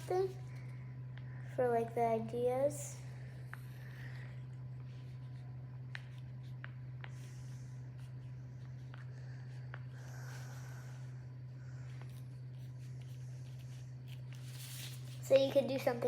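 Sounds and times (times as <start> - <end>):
steady low hum: 0.0 - 16.0
pen scratching on paper: 11.8 - 15.1.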